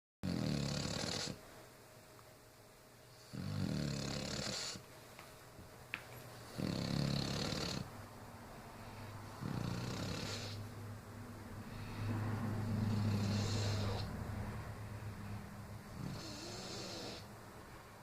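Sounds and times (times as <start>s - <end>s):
person snoring: 0.2s - 1.4s, 3.3s - 4.8s, 6.6s - 7.9s, 9.4s - 10.6s, 11.7s - 14.1s, 15.9s - 17.3s
quiet breathing: 8.5s - 10.8s, 11.5s - 14.4s.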